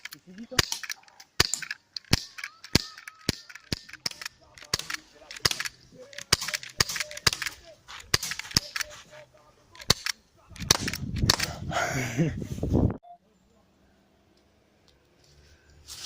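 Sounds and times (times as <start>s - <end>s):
airsoft guns firing: 0.0s - 9.0s, 9.8s - 11.6s.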